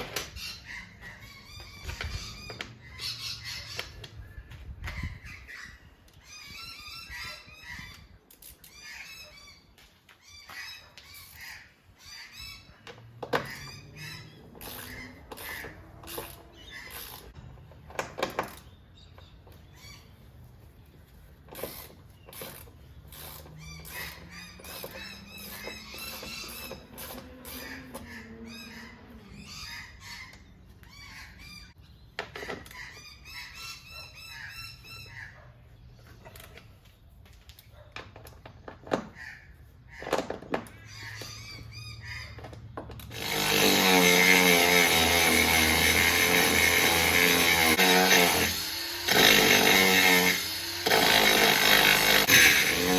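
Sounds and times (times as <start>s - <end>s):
birds chirping: 0.0s - 43.6s
power tool cutting: 43.1s - 52.9s.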